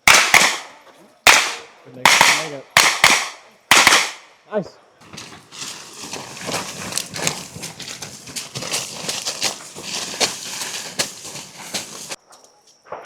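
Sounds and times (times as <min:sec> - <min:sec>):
rustling crackling noise: 0:05.0 - 0:12.2.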